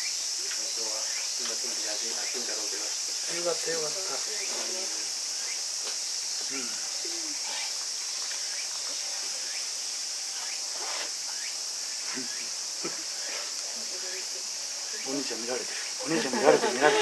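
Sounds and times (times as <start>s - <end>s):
high-pitched insect chorus: 0.0s - 17.0s
faint murmuring voices: 12.0s - 17.0s.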